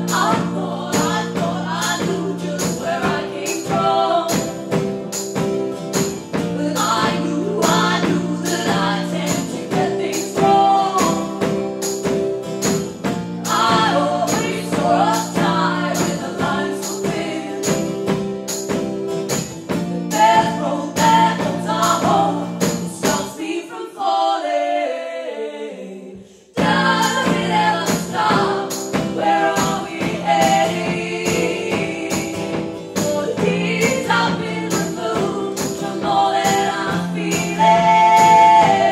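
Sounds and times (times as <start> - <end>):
live band playing: 0.0 - 23.3, 26.6 - 38.9
person singing: 6.4 - 11.5, 20.0 - 38.9.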